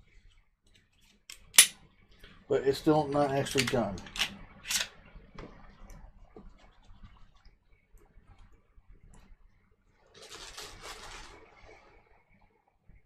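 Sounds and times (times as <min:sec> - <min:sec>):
pistol parts clicking and scraping: 0:01.3 - 0:01.8, 0:03.4 - 0:05.0
scraping rustle: 0:10.1 - 0:11.8.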